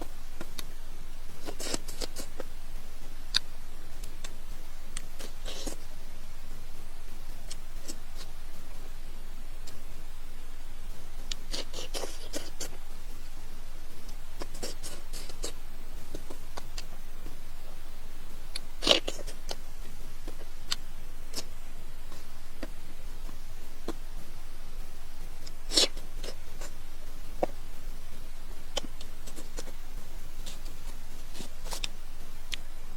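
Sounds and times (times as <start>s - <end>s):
steady hiss: 0.0s - 32.9s
eating crunches: 1.4s - 2.5s, 5.0s - 5.9s, 11.3s - 12.8s, 14.0s - 17.0s, 18.5s - 24.0s, 25.4s - 26.8s, 28.6s - 32.7s
mouth clicks: 3.3s - 5.9s, 9.6s - 9.9s, 18.5s - 24.2s.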